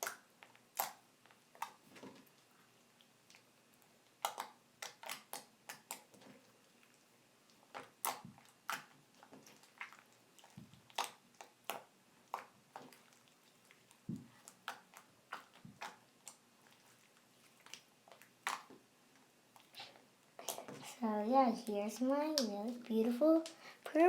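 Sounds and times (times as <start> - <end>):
slime sticky pops and clicks: 4.2 - 6.1.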